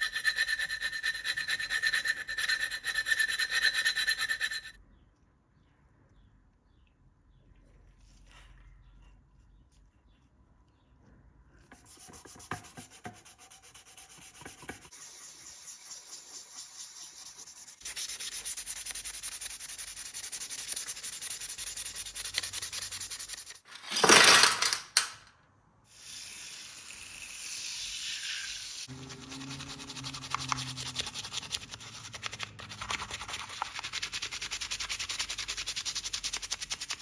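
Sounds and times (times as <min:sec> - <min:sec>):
sanding rasping scrape: 0:00.0 - 0:04.7, 0:11.8 - 0:23.6, 0:28.4 - 0:37.0.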